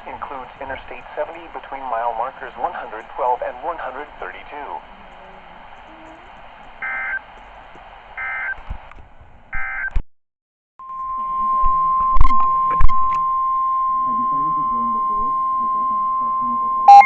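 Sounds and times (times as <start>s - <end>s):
steady warning alarm tone: 5.6s - 7.3s, 8.2s - 8.6s, 9.6s - 9.9s, 10.8s - 17.0s.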